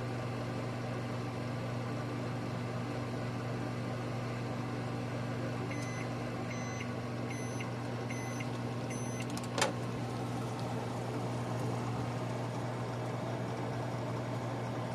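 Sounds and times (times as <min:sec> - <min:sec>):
microwave hum: 0:00.0 - 0:14.9
microwave beeps: 0:05.7 - 0:09.3.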